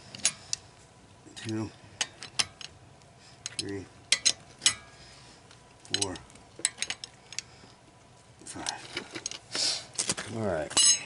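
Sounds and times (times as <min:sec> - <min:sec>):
socket wrench clinking on lug nuts: 0:03.5 - 0:04.8.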